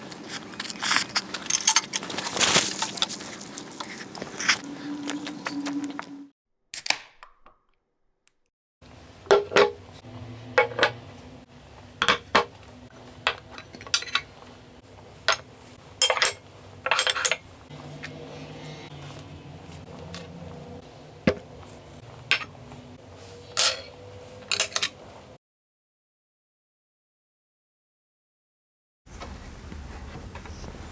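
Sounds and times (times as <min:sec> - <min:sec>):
utensils clinking on dishes: 0:00.1 - 0:06.1, 0:09.3 - 0:09.9, 0:10.6 - 0:11.0, 0:13.2 - 0:14.5, 0:15.2 - 0:25.1.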